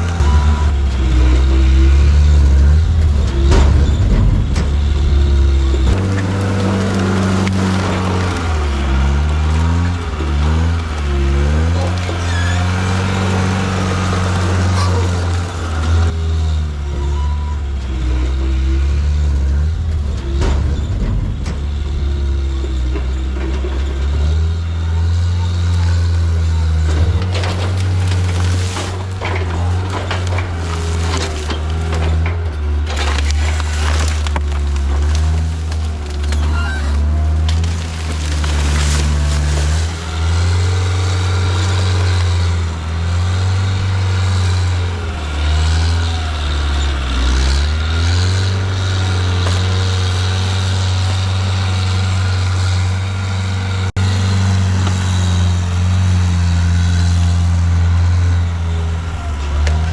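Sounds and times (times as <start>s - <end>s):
diesel engine at high revs: 0.0s - 59.9s
logs and brush cracking: 0.0s - 59.9s.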